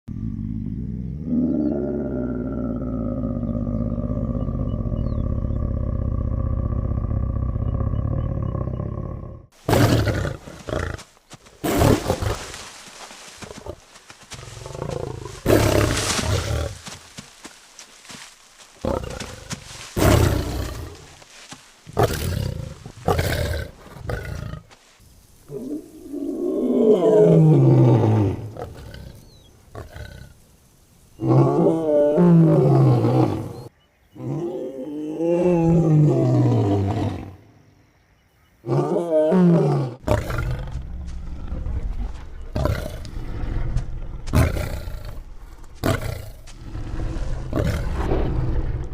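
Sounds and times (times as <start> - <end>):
lion roaring: 13.4 - 17.0, 38.7 - 48.9.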